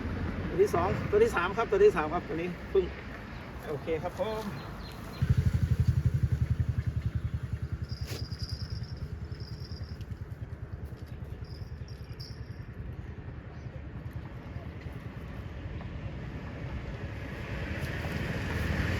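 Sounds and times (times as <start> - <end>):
small engine running: 4.8 - 15.1.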